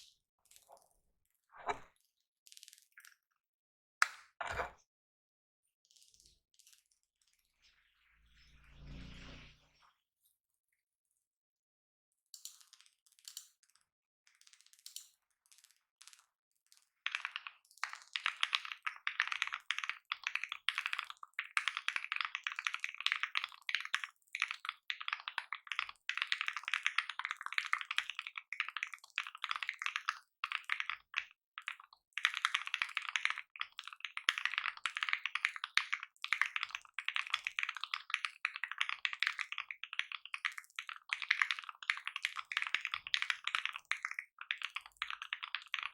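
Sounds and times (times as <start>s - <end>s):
mechanical keyboard typing: 17.1s - 45.9s.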